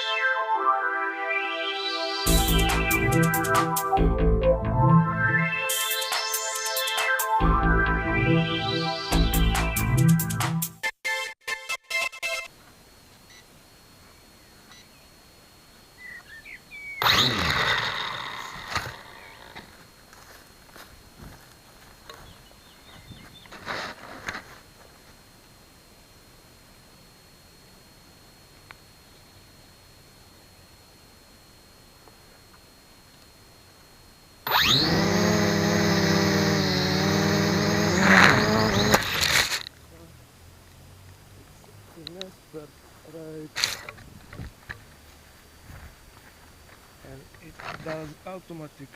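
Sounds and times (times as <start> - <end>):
quadcopter motors whining: 2.2 - 3.9, 13.1 - 48.9.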